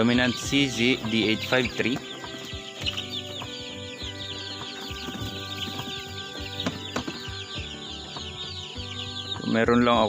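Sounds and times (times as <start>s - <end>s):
chicks peeping: 0.0s - 10.0s
soft knocks: 5.0s - 7.4s.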